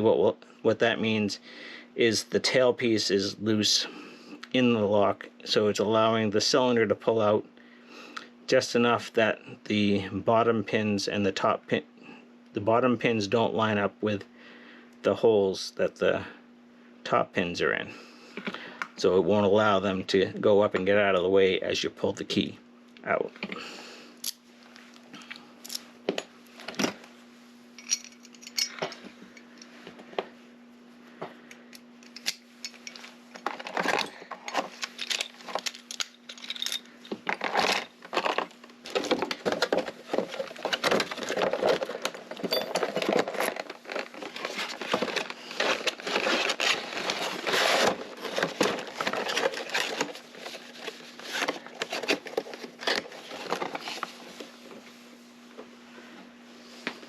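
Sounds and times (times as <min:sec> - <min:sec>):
steady low hum: 0:00.0 - 0:57.0
metal clicks of lock parts and keys: 0:27.8 - 0:28.9, 0:34.9 - 0:36.9.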